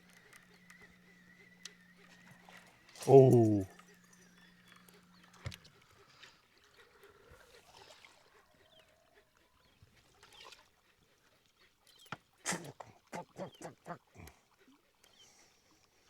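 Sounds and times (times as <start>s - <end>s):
soft ticks: 1.6s - 3.0s.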